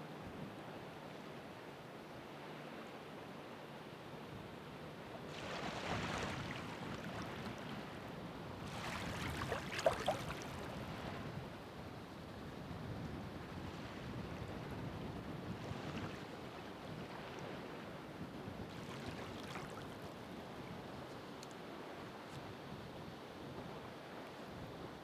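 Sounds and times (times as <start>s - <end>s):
ocean waves breaking on shore: 4.9s - 11.9s, 13.4s - 20.8s.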